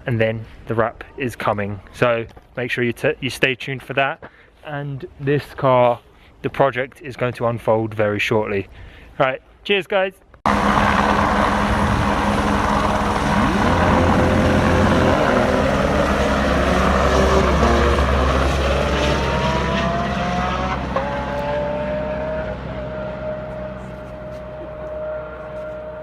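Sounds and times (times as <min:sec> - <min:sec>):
helicopter droning: 0:10.5 - 0:21.8
car engine accelerating hard: 0:10.5 - 0:26.0.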